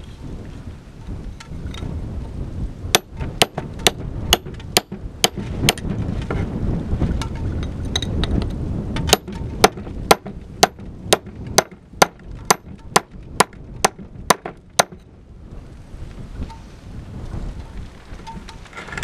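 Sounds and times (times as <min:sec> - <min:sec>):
wind on microphone: 0:00.0 - 0:19.0
hammer striking rock: 0:03.0 - 0:05.9, 0:09.0 - 0:15.0.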